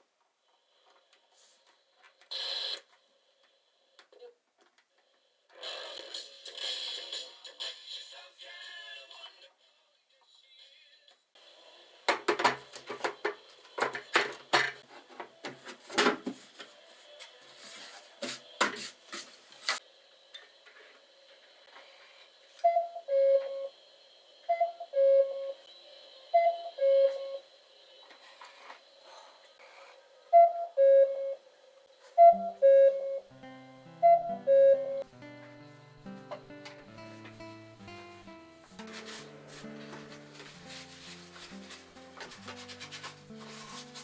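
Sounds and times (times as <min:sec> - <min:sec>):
sharp clicks and knocks: 0:12.1 - 0:14.8
cuckoo clock calling: 0:22.6 - 0:23.7, 0:24.5 - 0:25.7, 0:26.3 - 0:27.4, 0:30.3 - 0:31.4, 0:32.2 - 0:33.3, 0:34.0 - 0:35.0.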